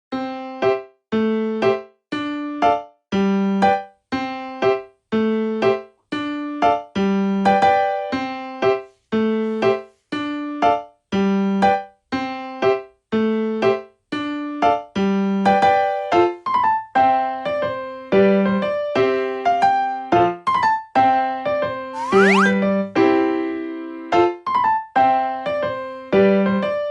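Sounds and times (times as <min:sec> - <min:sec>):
rising whistle sound effect: 0:22.0 - 0:22.6.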